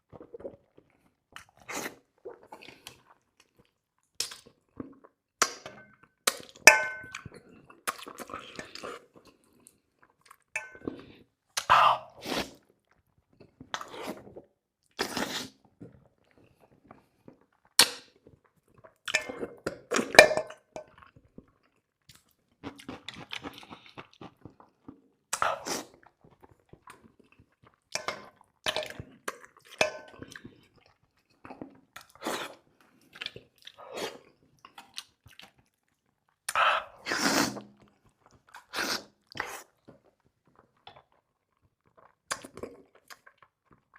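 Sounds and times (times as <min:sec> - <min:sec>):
chewing and crunching: 0:00.0 - 0:11.7, 0:20.7 - 0:43.9.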